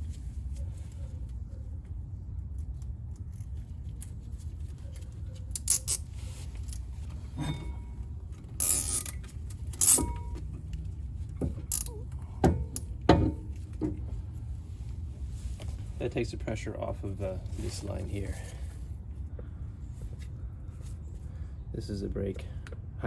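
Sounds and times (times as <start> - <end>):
low steady hum: 0.0 - 23.0
metal scrape: 5.6 - 7.9, 8.6 - 9.2, 9.8 - 10.4.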